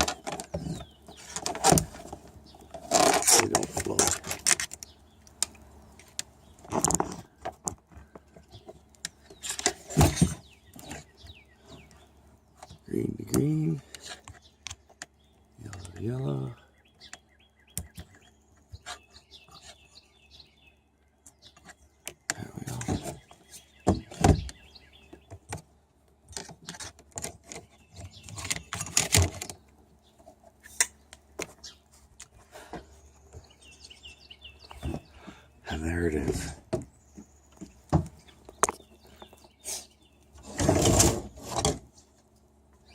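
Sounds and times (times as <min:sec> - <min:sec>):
wire leads clicking and rattling: 0:00.0 - 0:16.4, 0:21.3 - 0:33.5
bird chirping: 0:00.0 - 0:41.4, 0:42.0 - 0:42.9.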